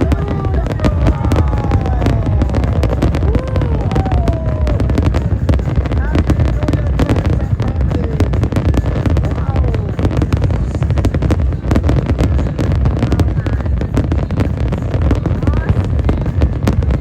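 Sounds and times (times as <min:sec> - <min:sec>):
deep rumble: 0:00.0 - 0:17.0
fireworks bangs and crackles: 0:00.0 - 0:17.0.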